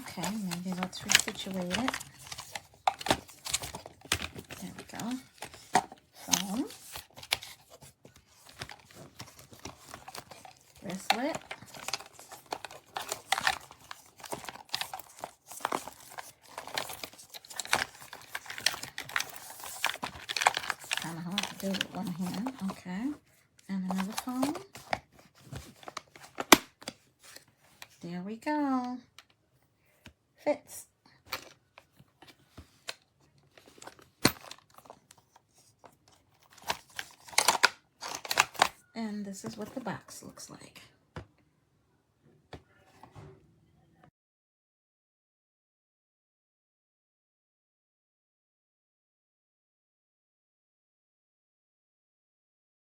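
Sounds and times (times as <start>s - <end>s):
purse crinkling and rustling: 0.0s - 28.0s, 31.3s - 40.4s.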